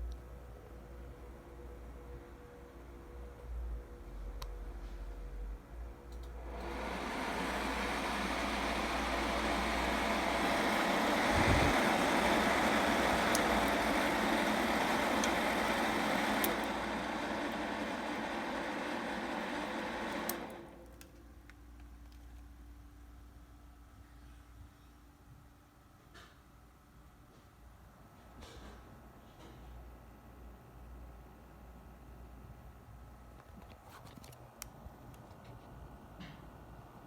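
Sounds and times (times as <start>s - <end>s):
cooling fans rushing: 6.4s - 20.9s.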